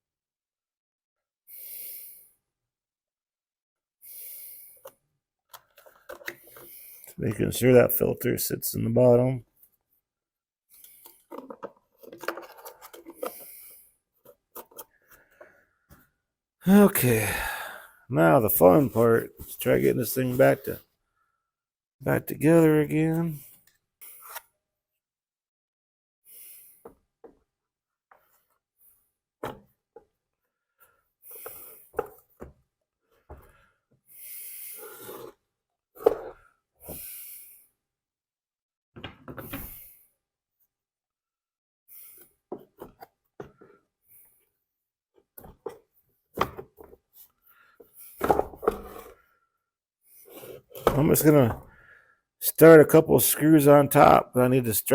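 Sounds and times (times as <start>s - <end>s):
rubbing and rustling of small parts: 10.8s - 13.6s.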